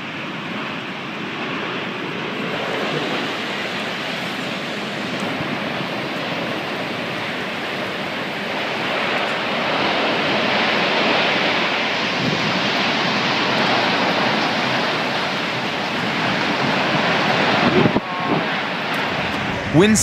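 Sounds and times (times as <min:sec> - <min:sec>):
strong wind rushing: 0:17.4 - 0:20.0.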